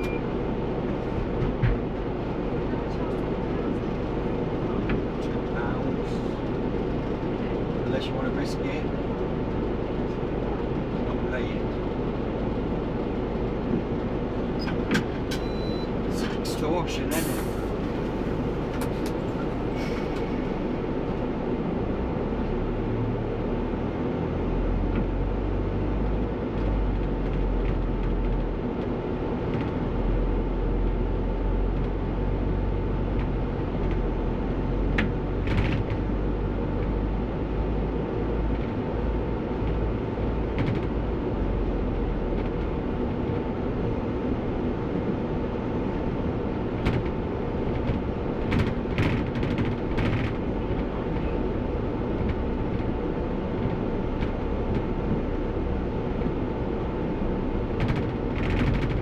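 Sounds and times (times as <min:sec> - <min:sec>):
bus engine rumble: 0:00.0 - 0:59.0.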